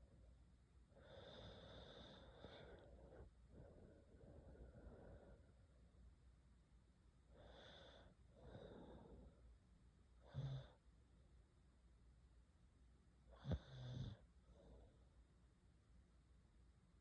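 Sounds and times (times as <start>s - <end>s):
girl breathing faintly: 0.9s - 5.8s.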